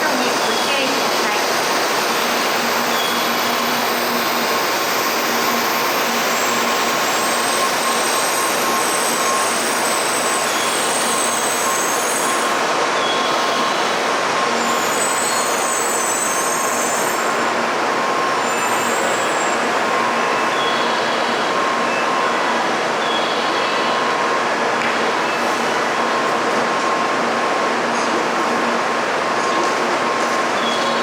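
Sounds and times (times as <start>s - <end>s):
train rushing along platform: 0.0s - 31.0s
high-pitched wheel squeals: 14.6s - 17.4s.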